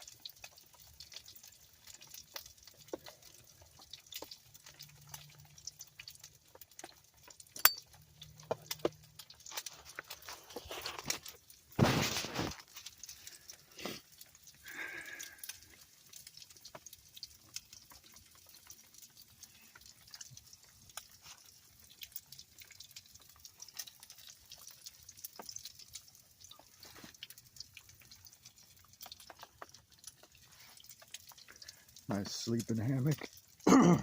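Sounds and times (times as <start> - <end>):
raindrops tapping on a tarp: 0.0 - 34.0.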